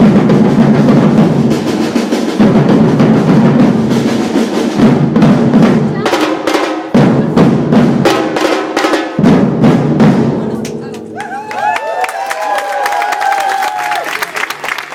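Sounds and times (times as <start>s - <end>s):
drums playing fast rhythm: 0.0s - 11.7s.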